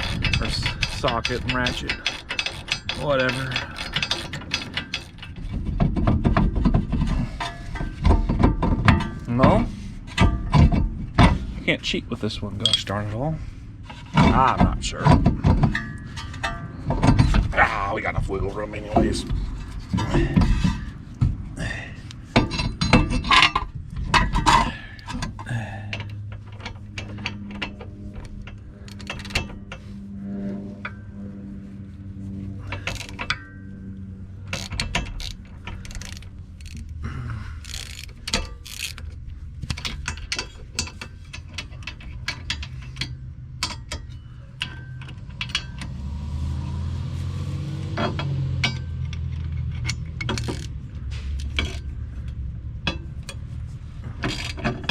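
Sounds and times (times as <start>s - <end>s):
ratchet wrench clicking: 0.0s - 5.4s, 34.5s - 37.0s, 37.6s - 44.0s, 48.6s - 50.8s
low steady hum: 0.0s - 45.9s.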